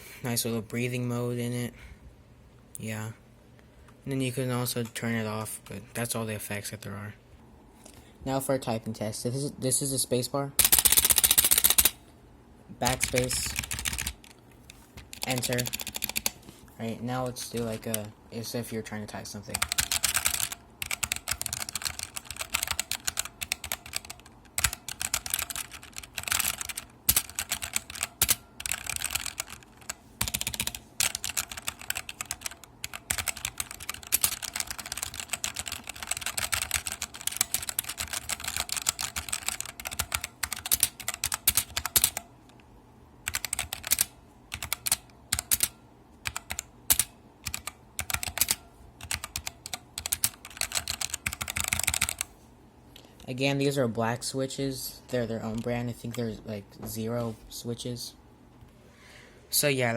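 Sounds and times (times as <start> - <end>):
mechanical keyboard typing: 10.6 - 12.0, 12.8 - 16.4, 17.2 - 18.2, 19.4 - 42.2, 43.2 - 52.3.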